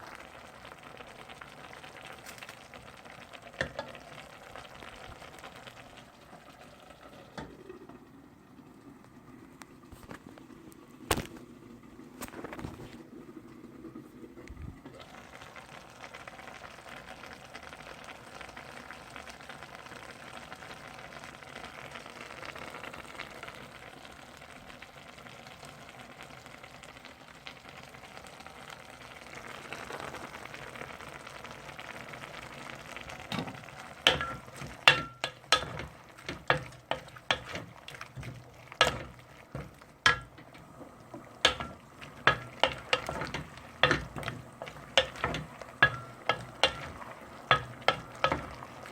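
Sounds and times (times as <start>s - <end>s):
food sizzling in a pan: 0.0s - 8.0s, 14.8s - 48.9s
utensil clanking against pan: 33.3s - 48.9s.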